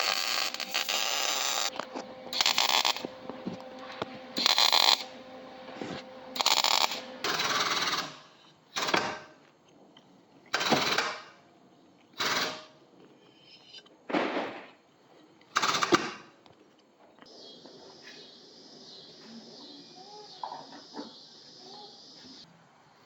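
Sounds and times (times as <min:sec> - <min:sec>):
power tool bursts: 0:00.0 - 0:09.3, 0:12.2 - 0:12.7.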